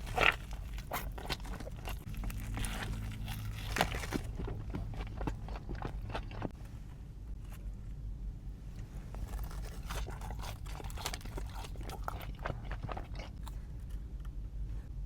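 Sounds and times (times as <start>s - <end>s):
person crunching crispy food: 0.0s - 6.5s, 9.2s - 13.6s.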